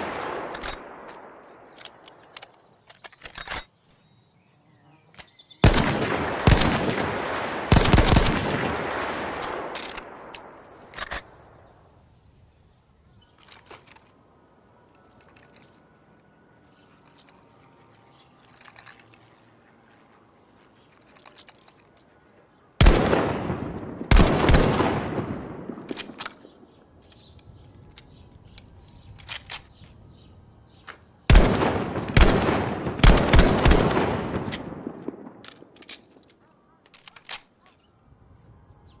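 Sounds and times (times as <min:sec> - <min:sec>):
rifle shots echoing: 0:00.0 - 0:02.1, 0:05.6 - 0:11.6, 0:22.8 - 0:26.6, 0:31.3 - 0:35.8.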